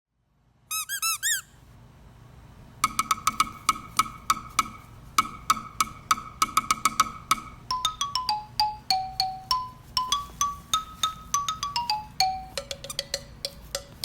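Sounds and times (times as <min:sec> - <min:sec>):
rubber squeaky toy squeaking: 0:00.7 - 0:01.6, 0:09.4 - 0:14.0
wood block clicking beat: 0:02.8 - 0:14.0.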